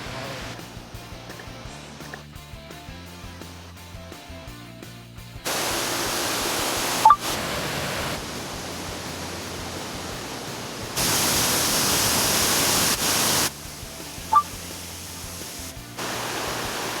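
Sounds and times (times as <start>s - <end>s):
rushing stream water: 5.5s - 13.6s, 14.2s - 17.0s
high two-note beep: 14.3s - 14.6s.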